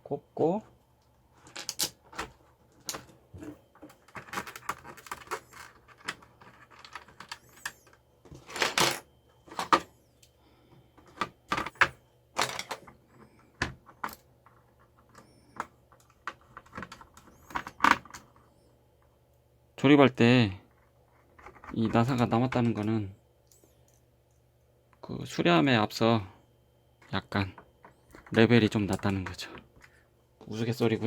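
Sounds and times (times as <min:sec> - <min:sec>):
plastic keyboard parts clicking: 0:03.8 - 0:08.9, 0:11.0 - 0:12.9, 0:15.1 - 0:18.2.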